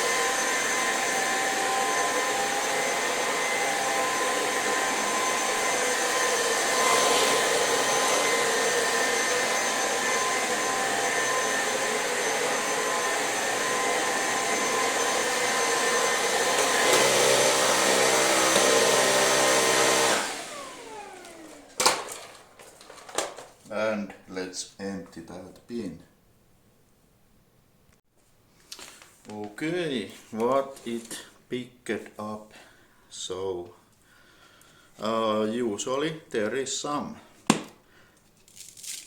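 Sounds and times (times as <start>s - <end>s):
cordless vacuum motor whine: 0.0s - 22.4s.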